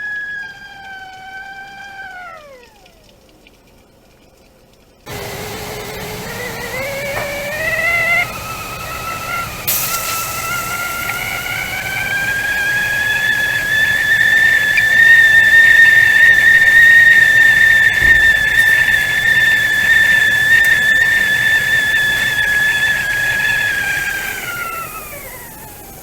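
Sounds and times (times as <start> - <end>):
tea kettle whistling: 0.0 - 2.8, 5.1 - 26.0.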